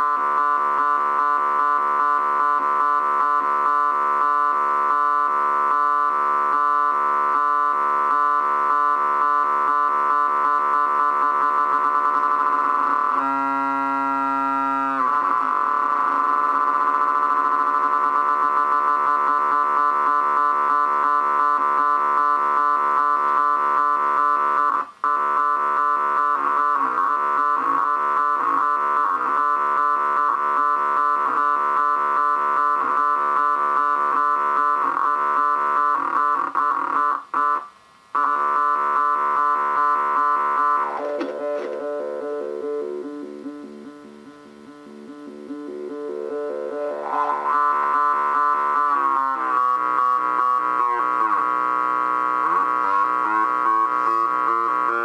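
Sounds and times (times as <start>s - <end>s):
buzzy synthesizer drone: 38.2s - 55.0s.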